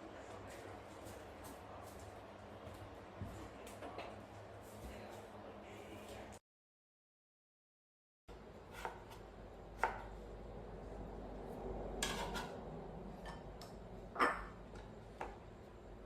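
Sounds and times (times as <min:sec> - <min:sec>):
dishes and utensils clinking: 0:14.2 - 0:14.6.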